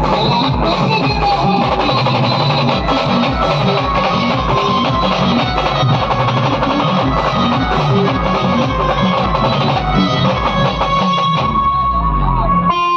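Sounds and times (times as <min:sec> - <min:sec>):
drum beats: 0:00.0 - 0:12.9
plucked string instrument melody: 0:00.0 - 0:12.9.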